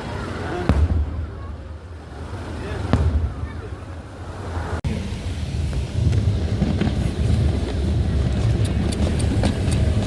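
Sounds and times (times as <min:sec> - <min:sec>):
moving vehicle rumble: 0:00.0 - 0:10.0
wind buffeting microphone: 0:00.0 - 0:10.0
distant fireworks pops: 0:02.8 - 0:04.0, 0:05.6 - 0:10.0.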